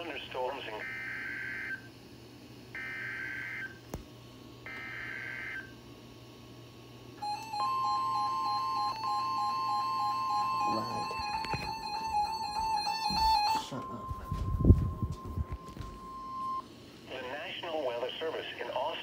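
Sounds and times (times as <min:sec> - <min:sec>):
steady warning alarm tone: 0:00.0 - 0:02.0, 0:02.7 - 0:03.8, 0:04.6 - 0:05.8, 0:07.2 - 0:16.7.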